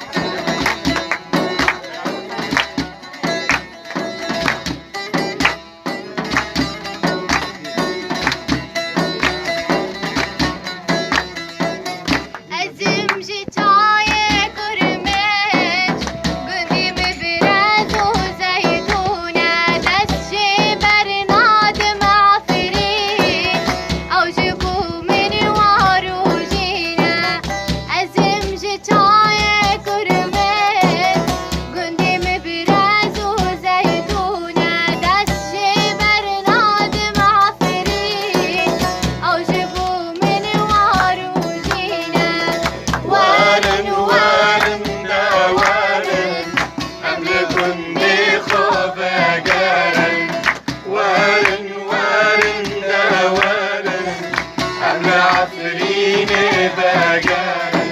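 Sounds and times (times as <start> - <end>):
drum rhythm: 0.0 - 57.9
instrumental backing: 0.0 - 57.9
girl singing: 12.5 - 45.7.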